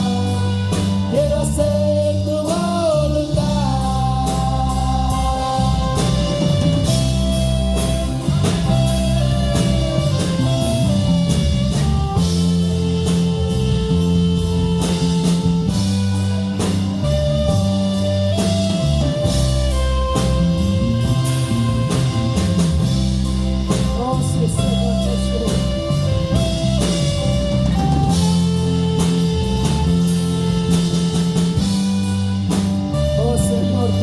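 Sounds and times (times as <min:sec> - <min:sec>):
band playing held chords: 0:00.0 - 0:34.0
drum kit beat: 0:00.0 - 0:34.0.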